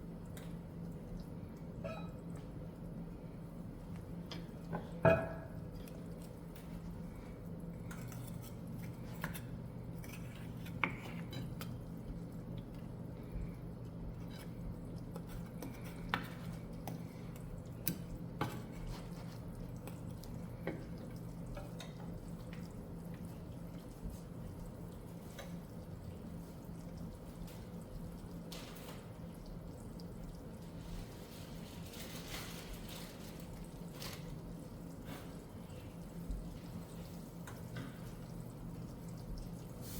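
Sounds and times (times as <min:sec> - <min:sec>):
steady low hum: 0:00.0 - 0:31.8
dishes and utensils clinking: 0:01.8 - 0:02.2, 0:05.0 - 0:05.6.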